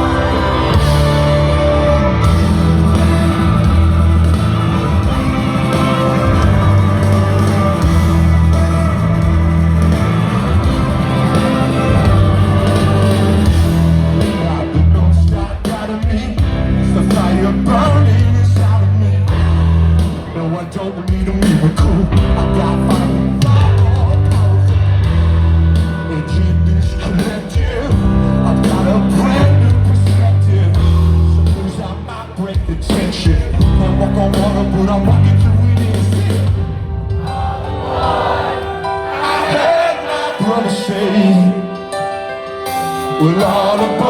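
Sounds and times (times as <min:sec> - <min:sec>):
live rock band playing: 0:00.0 - 0:44.0.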